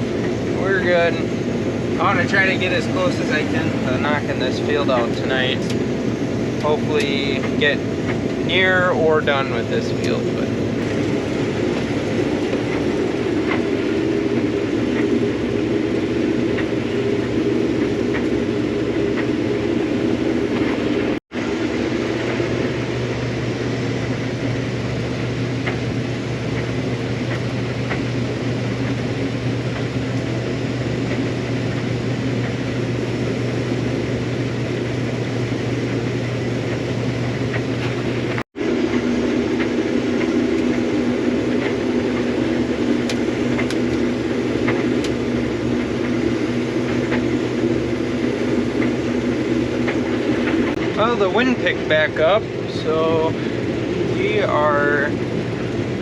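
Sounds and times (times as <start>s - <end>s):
combine harvester engine drone: 0.0s - 56.0s.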